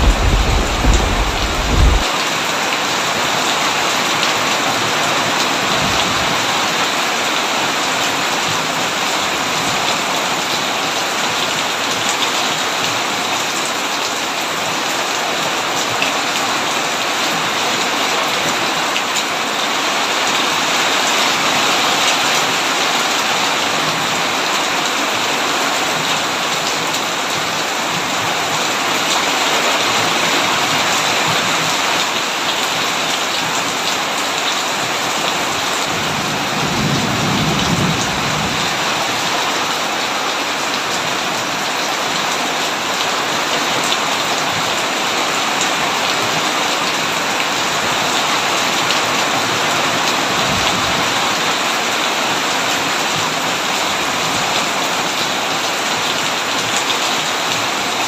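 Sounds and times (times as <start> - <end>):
low roll of thunder: 0.0 - 2.1
heavy rain on a tin roof: 0.0 - 58.0.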